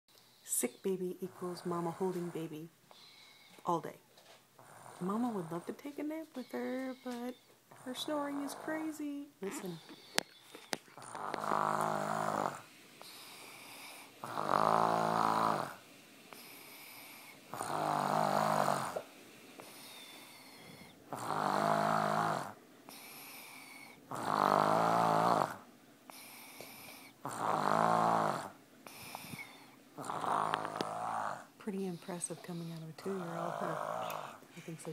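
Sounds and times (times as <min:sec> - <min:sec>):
quiet breaths: 0:00.1 - 0:34.9
child snoring: 0:06.5 - 0:09.0, 0:09.6 - 0:34.4.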